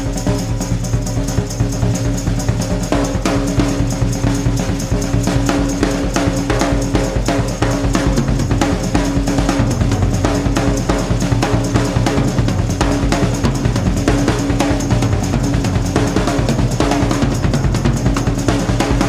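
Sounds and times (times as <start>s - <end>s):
drum kit beat: 0.0s - 19.0s.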